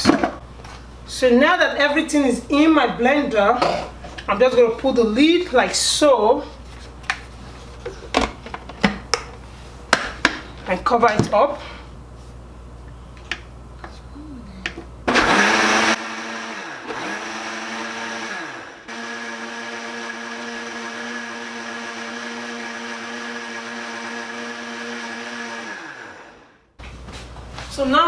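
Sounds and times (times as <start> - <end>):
blender motor running: 15.1 - 26.5.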